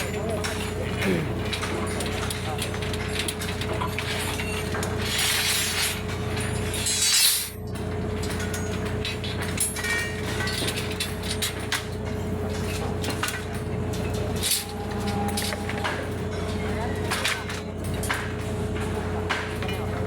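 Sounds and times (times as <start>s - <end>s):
machine humming: 14.4s - 17.1s.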